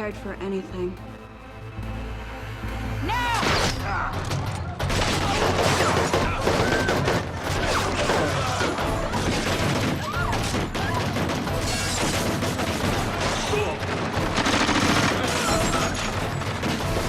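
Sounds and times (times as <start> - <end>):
automatic gunfire bursts: 10.8 - 17.0.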